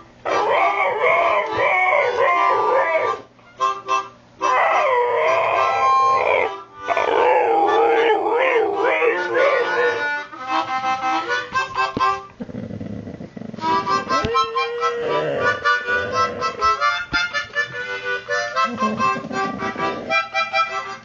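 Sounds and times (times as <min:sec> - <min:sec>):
husky howling: 0:00.3 - 0:03.3, 0:04.5 - 0:10.1, 0:14.0 - 0:16.8
harmonica music: 0:01.1 - 0:12.4, 0:13.6 - 0:21.0.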